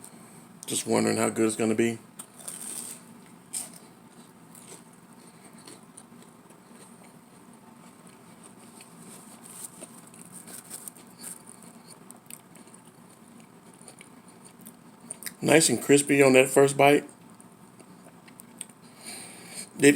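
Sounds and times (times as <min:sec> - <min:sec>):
crunching pastry crust: 0:02.2 - 0:15.4.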